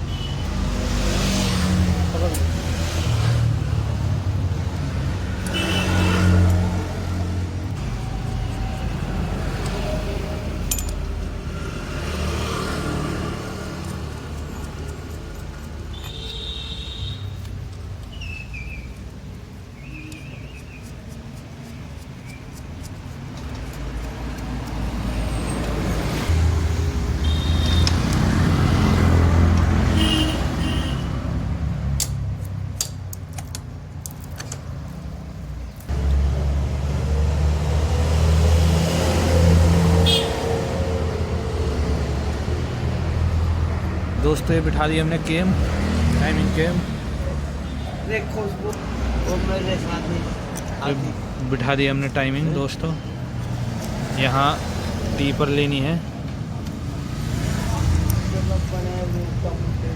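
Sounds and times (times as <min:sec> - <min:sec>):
vehicle engines humming: 0:00.0 - 0:59.9
sharp metallic clicks: 0:10.6 - 0:11.3, 0:31.8 - 0:35.0, 0:53.4 - 0:54.2.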